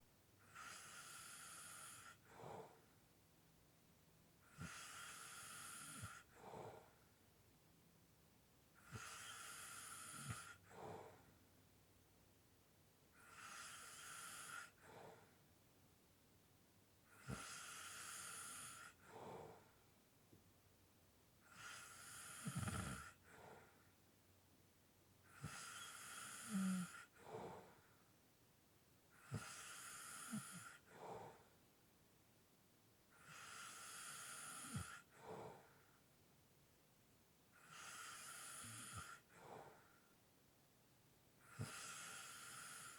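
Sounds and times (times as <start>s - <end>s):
person snoring lightly: 21.5s - 23.4s, 25.4s - 27.7s, 29.2s - 31.4s, 33.2s - 35.6s.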